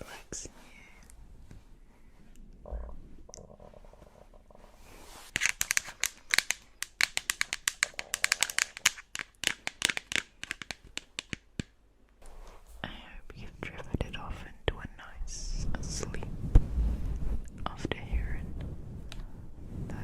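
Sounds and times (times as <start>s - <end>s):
crinkling handling noise: 3.5s - 10.8s.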